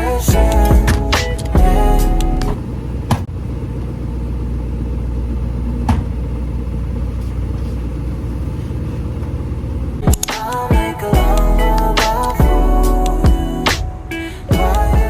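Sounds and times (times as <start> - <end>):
vehicle engine rumbling: 0.0 - 15.0
sharp click: 10.1 - 10.6.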